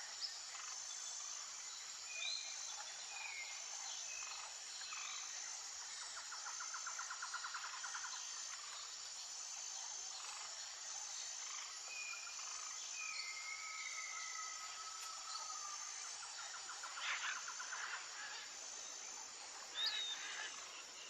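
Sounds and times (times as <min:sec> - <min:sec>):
high-pitched insect chorus: 0:00.0 - 0:21.0
thin whistled calls: 0:11.4 - 0:18.3, 0:19.7 - 0:20.6.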